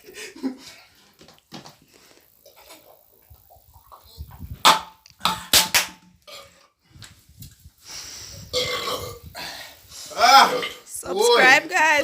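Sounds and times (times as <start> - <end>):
man burping: 8.5 - 9.5, 10.1 - 10.9.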